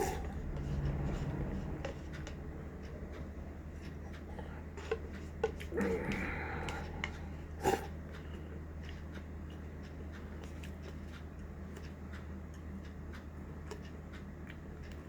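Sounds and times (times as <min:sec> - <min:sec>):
eating clicks and chewing: 0:00.0 - 0:15.0
steady low hum: 0:00.0 - 0:15.0.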